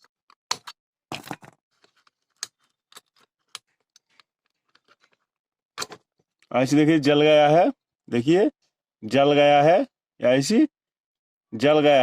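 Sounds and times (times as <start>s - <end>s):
small clicks and scrapes: 0.0s - 6.4s.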